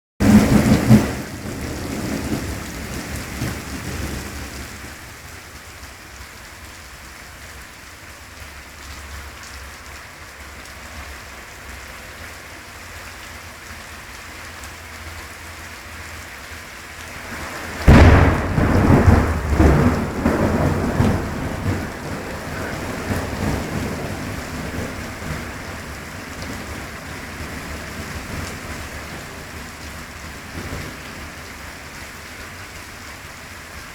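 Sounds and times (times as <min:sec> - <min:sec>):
close thunderclap cracking: 0:00.2 - 0:04.4, 0:17.3 - 0:29.5
thunder rumble: 0:00.2 - 0:05.0, 0:17.2 - 0:31.6
steady heavy rain: 0:00.2 - 0:33.9.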